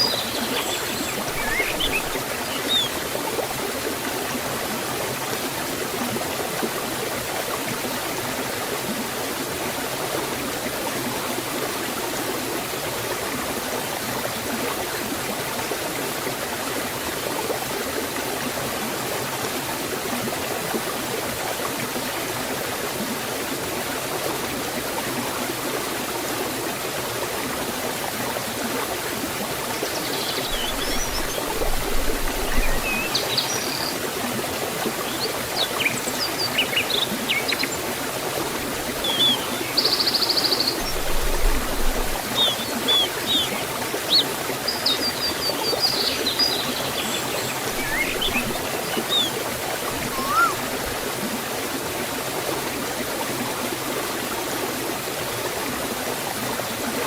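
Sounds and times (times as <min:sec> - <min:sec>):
stream and small waterfall rushing: 0:00.0 - 0:57.0
high bird chirps: 0:42.4 - 0:49.4, 0:50.0 - 0:50.6.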